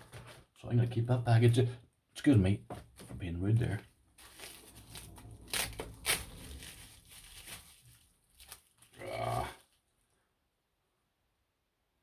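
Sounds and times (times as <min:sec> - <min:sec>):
packaging crumpling: 0:04.2 - 0:09.8
person's short voiced sound: 0:09.0 - 0:09.6.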